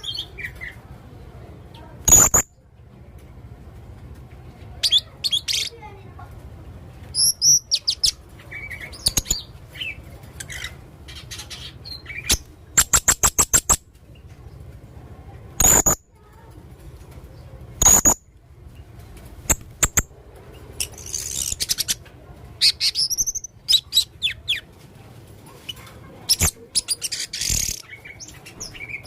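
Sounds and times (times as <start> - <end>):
parrot chirping and squeaking: 2.0 - 2.5, 4.8 - 5.8, 7.1 - 13.8, 15.6 - 16.0, 17.8 - 18.2, 19.4 - 24.6, 25.5 - 29.0.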